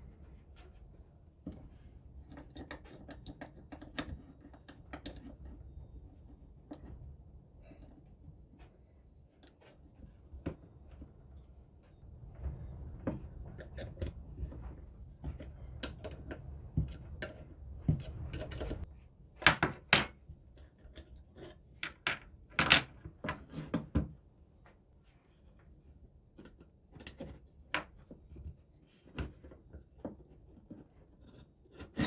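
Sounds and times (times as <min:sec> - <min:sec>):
metal clinks and knocks: 0:13.1 - 0:18.9.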